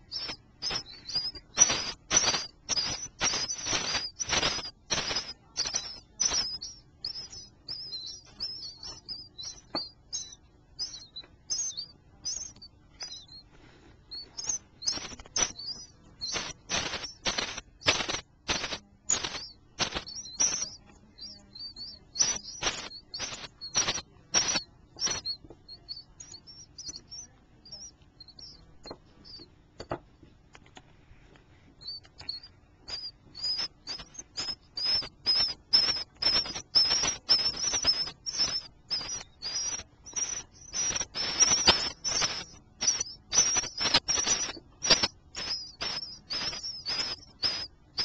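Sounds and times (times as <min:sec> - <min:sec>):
baby birds chirping: 0:00.0 - 0:48.0.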